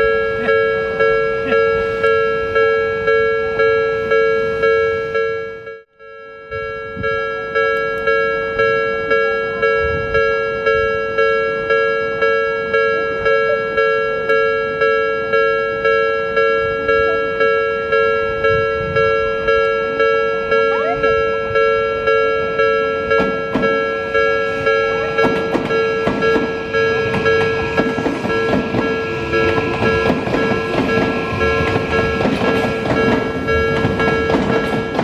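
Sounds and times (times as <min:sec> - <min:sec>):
level crossing bell ringing: 0:00.0 - 0:35.0
train rumble and rail clatter: 0:16.6 - 0:35.0.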